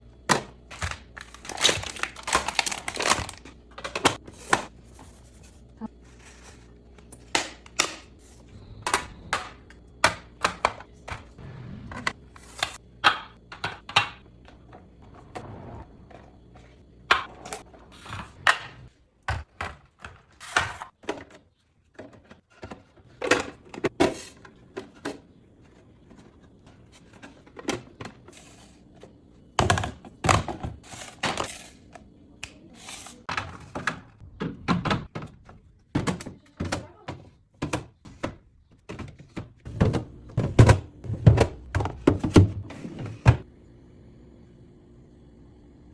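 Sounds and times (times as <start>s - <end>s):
plastic containers clacking: 0.2s - 4.7s, 33.3s - 43.4s.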